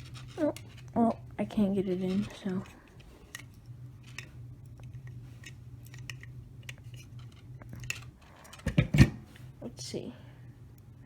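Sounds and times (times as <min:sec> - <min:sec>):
low steady hum: 0:00.0 - 0:11.0
metal tweezers clicking and scraping: 0:02.0 - 0:08.7.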